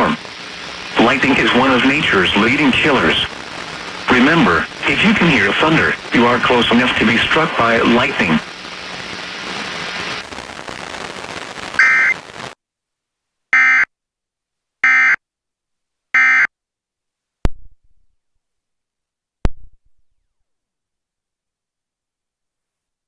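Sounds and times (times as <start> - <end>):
steady hiss: 0.0 - 12.6
warbling digital data tones: 11.8 - 12.2.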